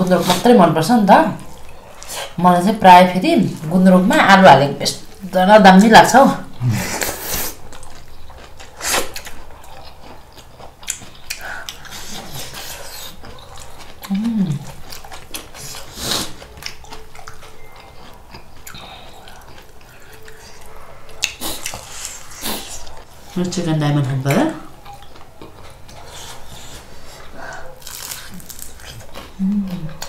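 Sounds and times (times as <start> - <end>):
chewing fried chicken: 6.5 - 23.3, 24.7 - 30.0
person humming: 14.1 - 14.6, 29.4 - 30.0.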